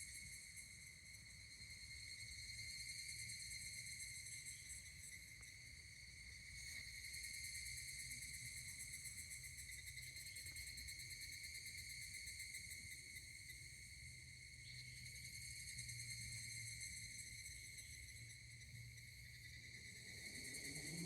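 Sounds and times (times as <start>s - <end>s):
cicadas trilling: 0.2s - 21.0s.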